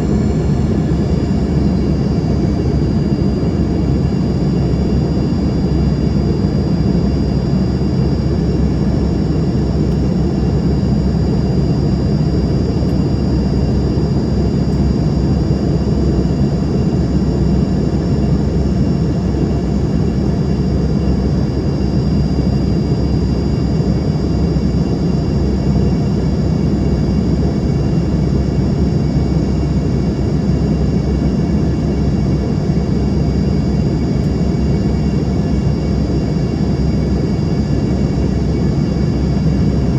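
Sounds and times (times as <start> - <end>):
thin high whine: 0.0 - 7.2
jet engines droning: 0.0 - 39.9.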